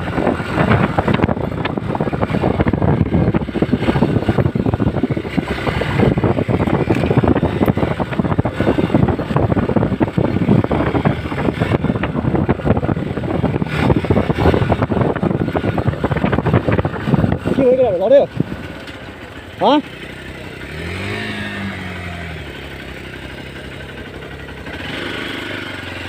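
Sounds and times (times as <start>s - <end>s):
wind buffeting microphone: 0.0s - 19.7s
motorcycle engine running: 0.0s - 26.0s.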